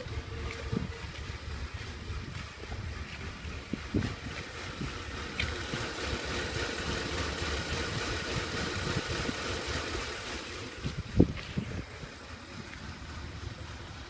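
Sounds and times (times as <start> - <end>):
engine idling rough: 0.0 - 14.0.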